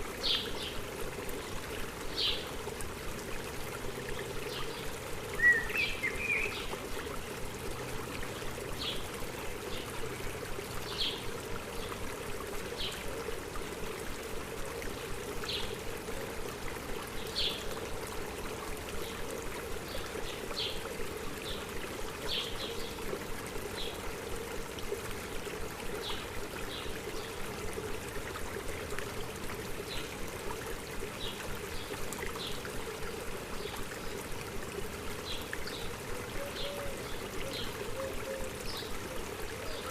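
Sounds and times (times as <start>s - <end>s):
stream running: 0.0s - 39.9s
bird chirping: 5.4s - 6.6s
bird twitter: 5.4s - 6.6s.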